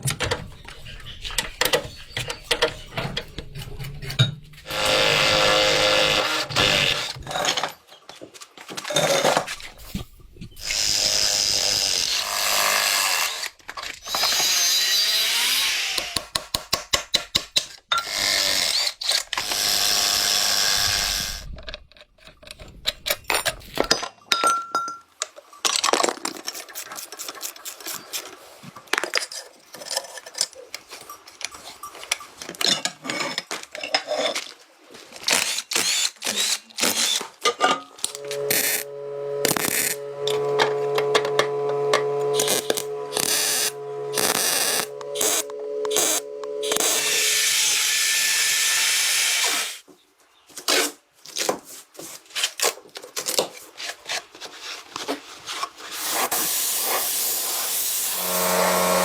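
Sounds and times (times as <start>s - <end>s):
tools tapping and clinking: 0.0s - 4.8s, 22.0s - 26.7s
power tools running: 4.6s - 7.6s, 10.6s - 16.2s, 38.0s - 49.8s, 57.6s - 59.0s.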